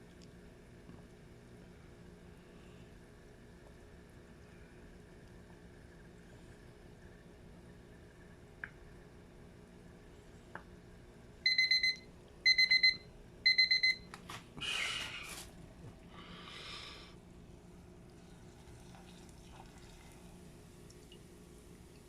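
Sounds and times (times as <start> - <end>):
electronic kitchen timer beeping: 11.4 - 14.2.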